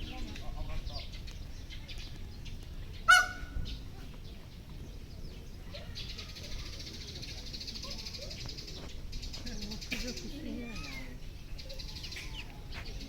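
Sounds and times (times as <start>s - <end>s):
peacock call: 3.1s - 3.6s.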